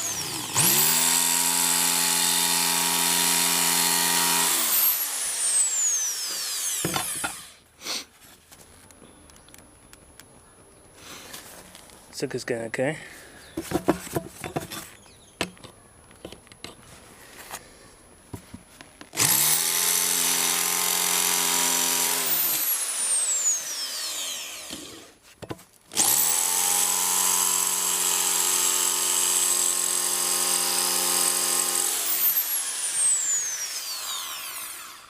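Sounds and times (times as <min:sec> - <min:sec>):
power drill drilling: 0:00.0 - 0:07.6, 0:19.2 - 0:25.2, 0:25.9 - 0:35.0.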